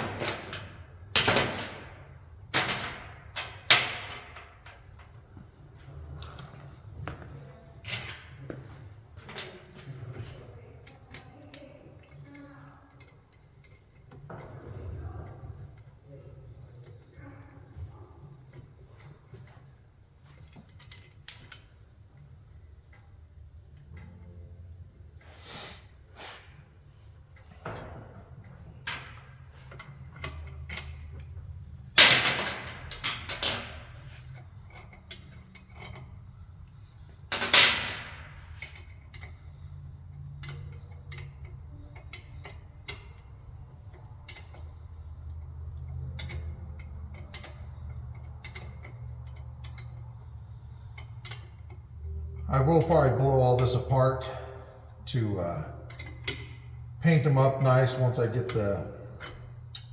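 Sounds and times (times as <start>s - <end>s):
metal tools clinking: 1.2s - 5.2s, 28.8s - 36.3s, 37.3s - 39.4s
loud metallic clatters: 31.9s - 34.0s, 37.3s - 38.5s.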